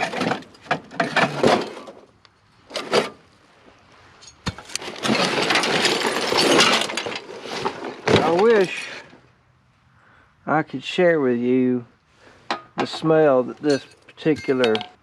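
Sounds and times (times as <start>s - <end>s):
scrap metal clanking: 0.0s - 2.0s, 2.7s - 3.2s, 4.2s - 9.2s, 12.4s - 15.0s
scrap metal clattering and scraping: 0.0s - 3.3s, 4.2s - 9.2s, 12.2s - 15.0s.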